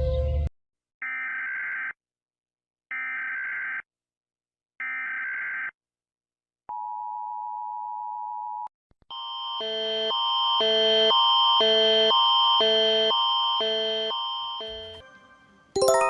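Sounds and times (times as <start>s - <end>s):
pulsing alarm tones: 9.2s - 15.1s
two-tone attention signal: 14.6s - 15.1s.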